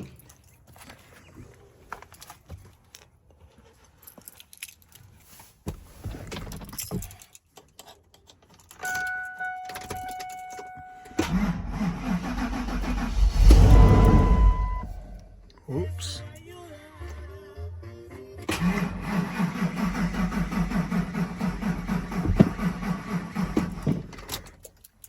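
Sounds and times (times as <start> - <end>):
car keys jangling: 6.6 - 10.9
starter cranking engine: 11.2 - 14.8, 18.5 - 24.3
steady electronic tone: 12.2 - 15.5.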